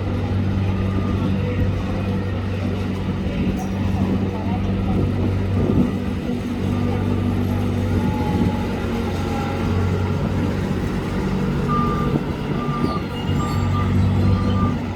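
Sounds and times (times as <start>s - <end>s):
street vacuum vehicle humming: 0.0s - 14.9s
short warning beeps: 11.7s - 14.9s.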